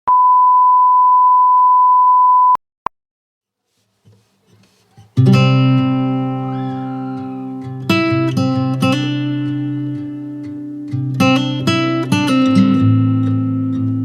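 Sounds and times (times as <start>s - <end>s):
strummed acoustic guitar chord: 5.2s - 14.0s.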